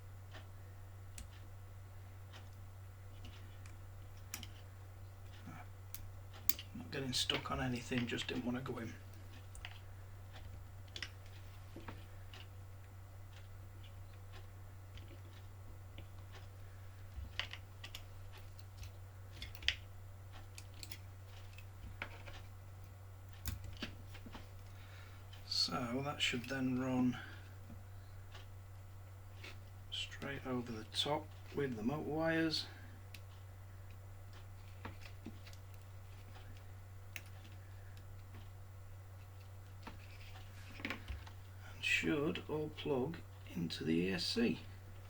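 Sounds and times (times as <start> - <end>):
steady low hum: 0.0 - 45.0
small clicks and taps of handling: 2.3 - 4.6, 17.1 - 22.5.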